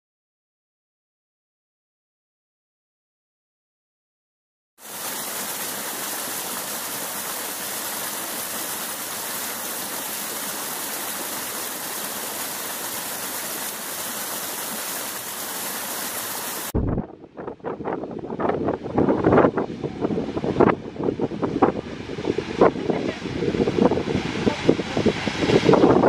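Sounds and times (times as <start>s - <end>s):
rushing water: 4.8s - 16.8s.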